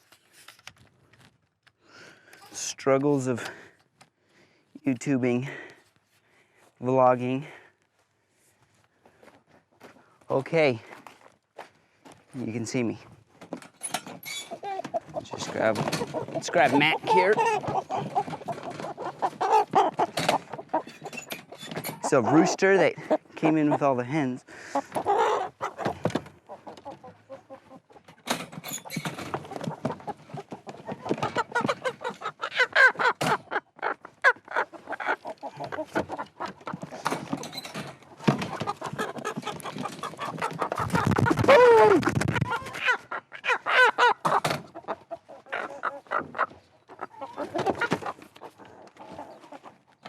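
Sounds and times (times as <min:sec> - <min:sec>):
chickens clucking and squawking: 0:14.0 - 0:50.0
knocks and scuffles in crate: 0:14.8 - 0:19.0, 0:36.7 - 0:40.0.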